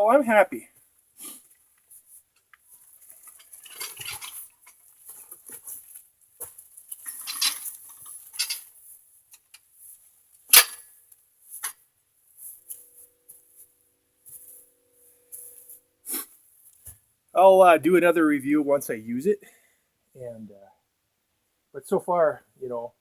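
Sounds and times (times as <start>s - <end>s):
metal clattering and scraping: 3.1s - 6.0s, 6.9s - 8.8s.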